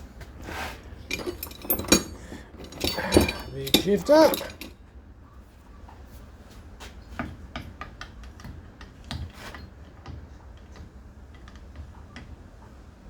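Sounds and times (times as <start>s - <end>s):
metal hand tools clicking: 1.1s - 4.7s.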